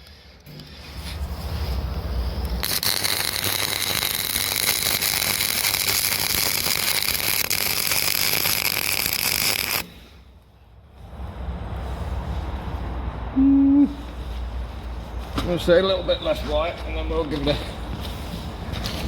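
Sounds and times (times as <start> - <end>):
welder arc crackling: 0.0 - 9.9.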